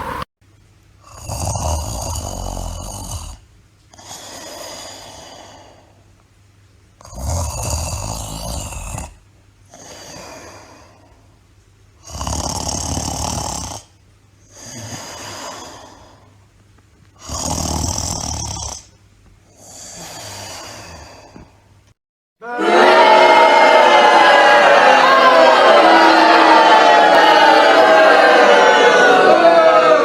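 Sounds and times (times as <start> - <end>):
person snoring: 1.0 - 5.9, 7.0 - 11.1, 12.0 - 13.9, 14.5 - 16.3, 17.2 - 21.5
soft breath: 3.9 - 6.1, 9.7 - 11.4, 14.4 - 16.5, 19.5 - 21.8.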